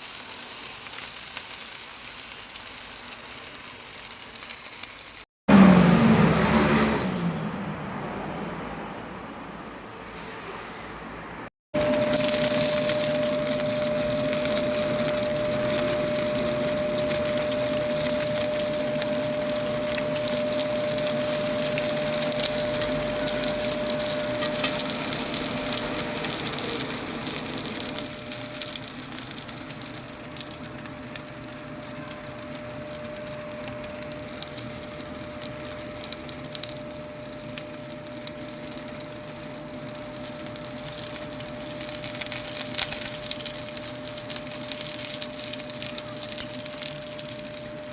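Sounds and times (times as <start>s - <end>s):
dumplings sizzling in oil: 0.0s - 6.0s, 11.8s - 47.9s
steady hum: 11.8s - 47.9s.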